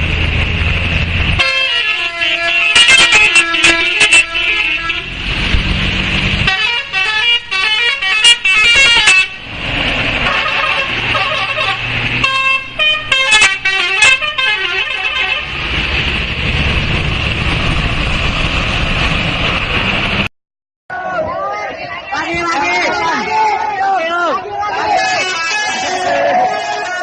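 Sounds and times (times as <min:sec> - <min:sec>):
musical bus horn: 0:01.4 - 0:05.2, 0:06.4 - 0:09.4, 0:10.2 - 0:15.6, 0:24.9 - 0:27.0.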